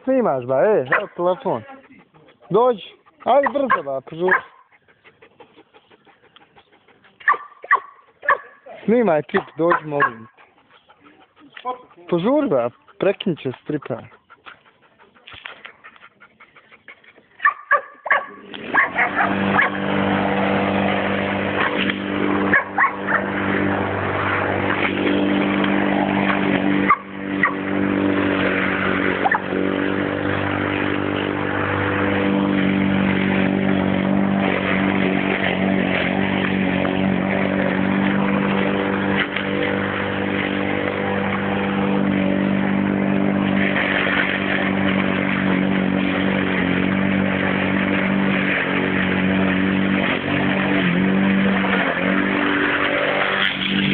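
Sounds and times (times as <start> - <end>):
lawn mower engine running: 0.0 - 16.0, 17.4 - 53.9
dog barking: 0.9 - 1.2, 3.3 - 4.7, 7.2 - 8.6, 9.4 - 10.4, 17.4 - 19.8, 22.5 - 23.3, 26.9 - 27.6, 29.2 - 29.4.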